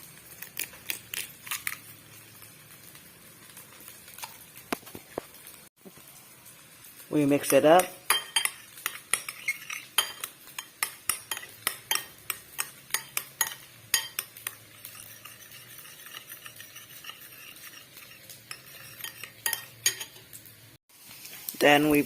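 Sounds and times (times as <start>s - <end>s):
eggs beaten in a bowl: 7.4s - 20.2s.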